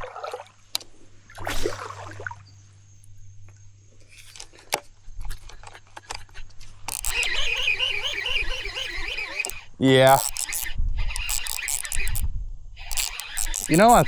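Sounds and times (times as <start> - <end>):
faint steady hum: 0.0 - 14.0
handling clicks and rustling: 4.1 - 7.8, 12.9 - 14.0.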